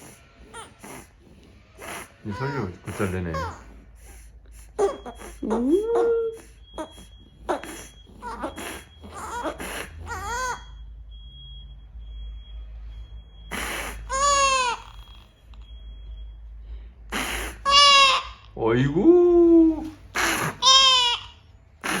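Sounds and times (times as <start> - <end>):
baby crying and whimpering: 0.0 - 10.8, 13.5 - 15.3, 17.1 - 18.4, 19.7 - 22.0.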